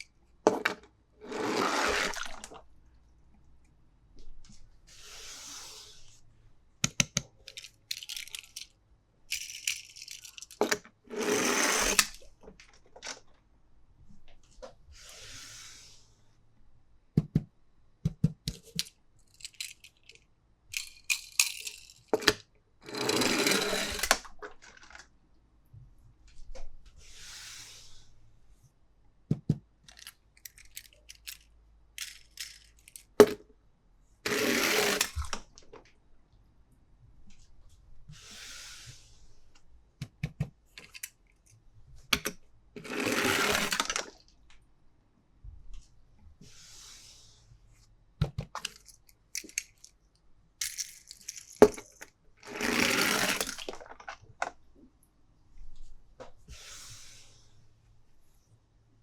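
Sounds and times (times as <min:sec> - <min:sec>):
toy pieces clicking: 0:06.8 - 0:12.2, 0:18.6 - 0:24.2, 0:29.9 - 0:33.4, 0:34.3 - 0:35.3, 0:42.8 - 0:44.1, 0:48.6 - 0:50.0, 0:50.6 - 0:53.9.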